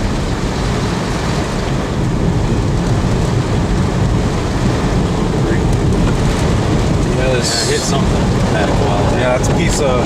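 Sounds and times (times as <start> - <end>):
car driving cabin noise: 0.0 - 10.0
road rumble: 0.0 - 10.0
wind buffeting microphone: 0.0 - 10.0.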